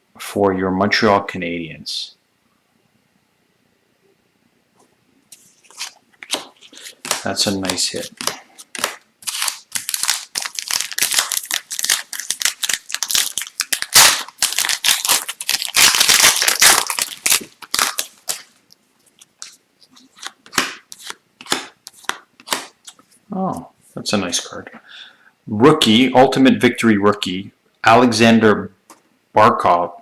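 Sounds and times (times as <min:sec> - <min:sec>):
wrappers tearing and crumpling: 0:05.6 - 0:18.6.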